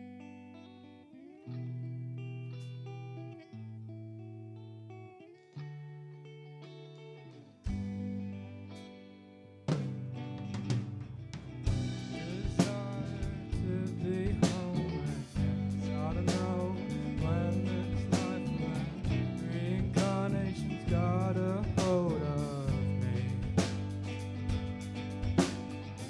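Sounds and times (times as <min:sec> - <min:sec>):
guitar: 0:00.0 - 0:26.0
drum kit beats: 0:09.7 - 0:26.0
person singing: 0:12.0 - 0:23.7.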